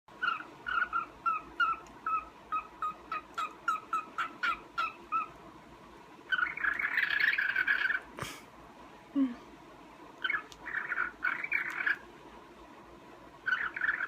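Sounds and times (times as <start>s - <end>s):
cockatiel chirping: 0.2s - 5.3s, 6.3s - 8.0s, 10.2s - 12.0s, 13.4s - 14.0s
harsh chattering bird call: 6.3s - 8.1s, 10.2s - 12.0s, 13.4s - 14.0s.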